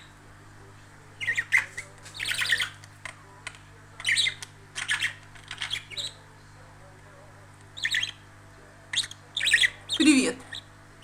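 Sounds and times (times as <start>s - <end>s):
budgerigar chattering and squawking: 1.2s - 2.8s, 4.0s - 6.2s, 7.8s - 8.2s, 8.9s - 10.7s.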